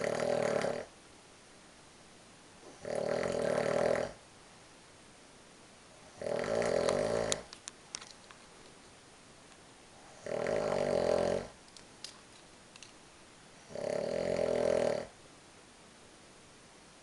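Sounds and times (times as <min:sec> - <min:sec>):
person snoring: 0:00.0 - 0:00.9, 0:02.7 - 0:04.2, 0:06.0 - 0:07.5, 0:10.0 - 0:11.6, 0:13.6 - 0:15.2.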